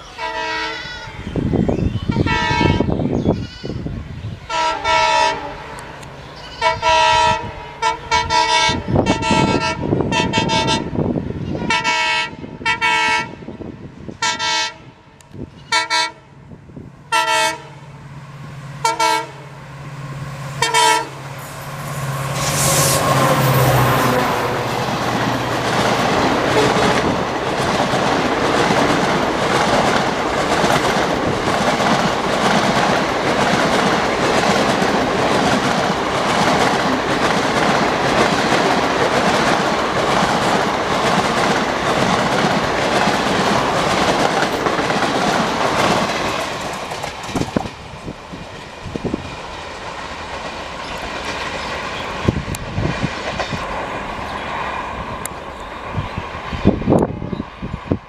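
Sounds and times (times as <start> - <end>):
locomotive horn: 0.1 - 1.2, 2.1 - 3.8, 4.5 - 5.8, 6.4 - 13.5, 14.2 - 15.0, 15.6 - 16.3, 17.1 - 17.9, 18.8 - 19.6, 20.6 - 25.5, 26.4 - 27.2
train wheels clattering over rail joints: 24.8 - 54.3.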